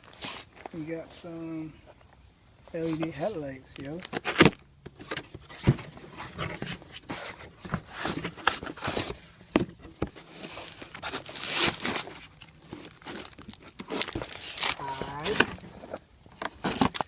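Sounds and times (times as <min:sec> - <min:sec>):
packaging rustling: 0:10.0 - 0:17.0.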